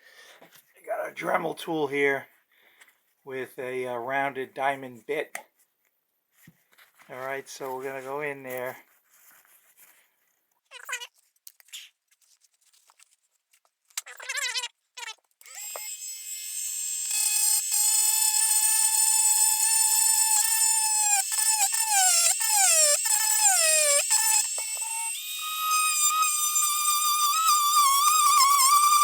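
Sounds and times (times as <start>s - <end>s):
rotary tool grinding metal: 15.4s - 29.0s.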